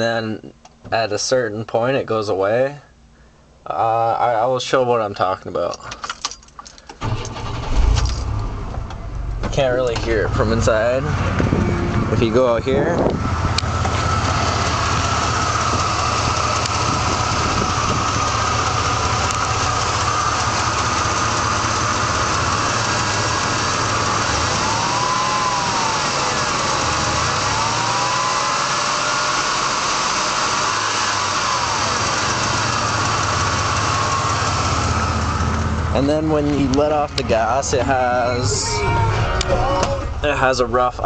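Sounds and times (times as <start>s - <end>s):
engine clicking noise: 5.8s - 10.2s, 12.9s - 37.6s
truck engine revving: 7.0s - 41.0s.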